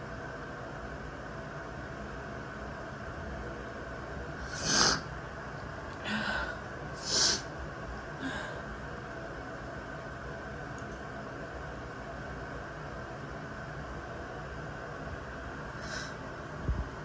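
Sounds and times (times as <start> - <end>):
woman sniffing: 4.4 - 5.1, 7.0 - 7.5.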